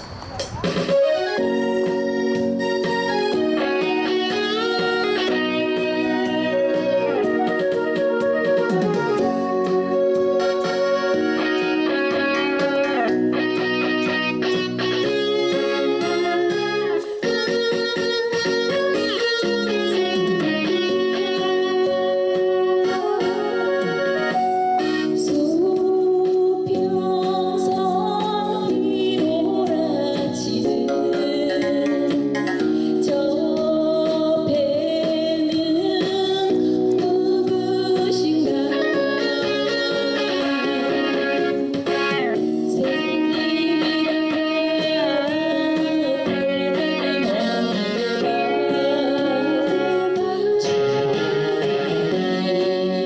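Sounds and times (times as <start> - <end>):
keyboard and guitar backing track: 0.0 - 53.0
trot music: 0.5 - 26.0, 37.1 - 53.0
woman singing: 2.9 - 53.0.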